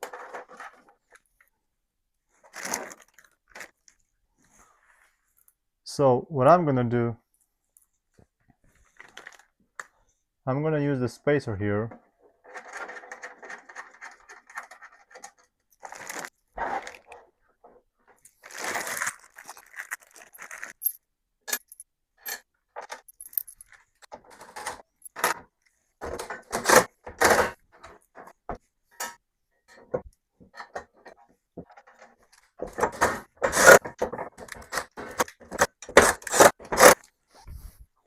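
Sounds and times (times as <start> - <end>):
small metal hardware clinking: 20.8 - 23.8.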